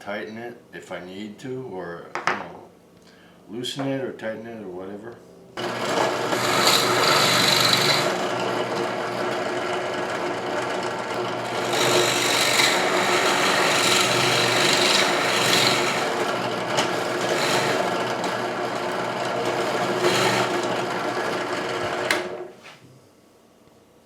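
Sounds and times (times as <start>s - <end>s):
drill press boring into plywood: 5.6s - 22.5s.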